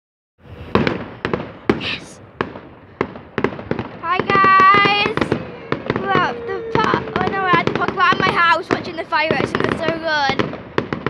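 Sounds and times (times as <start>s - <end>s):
fireworks bangs: 0.4s - 11.0s
person calling out high: 4.1s - 9.8s.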